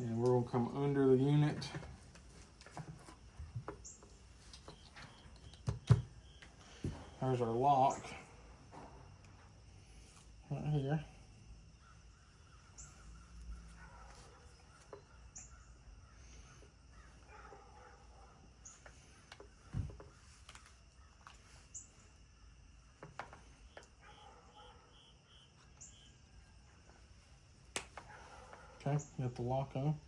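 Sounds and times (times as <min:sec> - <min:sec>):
faint bird chirps: 0:03.6 - 0:08.5, 0:10.4 - 0:27.3.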